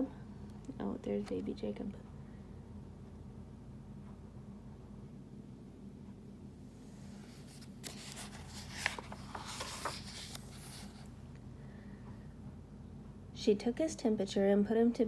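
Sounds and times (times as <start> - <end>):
paper pages rustling: 6.9 - 11.2.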